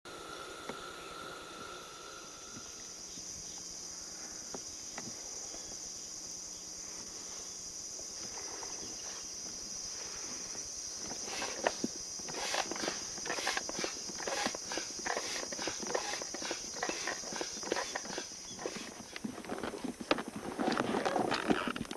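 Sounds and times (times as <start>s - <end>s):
high-pitched insect drone: 0.1s - 19.2s.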